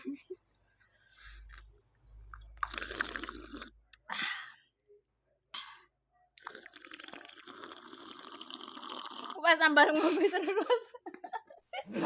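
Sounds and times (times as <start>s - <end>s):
person slurping a drink: 2.3s - 3.8s, 6.4s - 9.4s.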